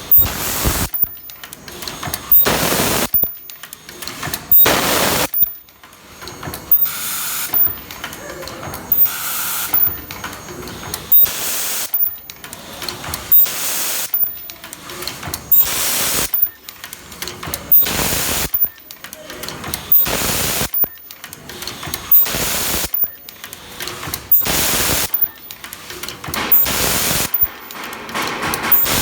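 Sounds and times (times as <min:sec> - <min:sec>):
hiss of air: 0:00.0 - 0:03.3, 0:04.1 - 0:05.5, 0:08.9 - 0:10.0, 0:11.1 - 0:12.1, 0:13.0 - 0:14.4, 0:15.5 - 0:16.5, 0:17.7 - 0:18.7, 0:19.8 - 0:20.9, 0:21.6 - 0:23.1, 0:23.7 - 0:27.8, 0:28.4 - 0:29.0
welding machine sharp click: 0:00.0 - 0:29.0.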